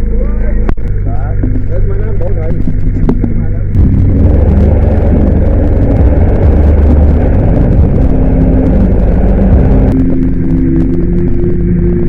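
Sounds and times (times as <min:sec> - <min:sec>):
boat engine rumbling: 0:00.0 - 0:12.0.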